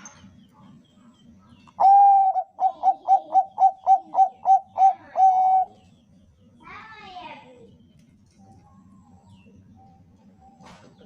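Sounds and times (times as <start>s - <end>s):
dove cooing: 1.8s - 5.8s.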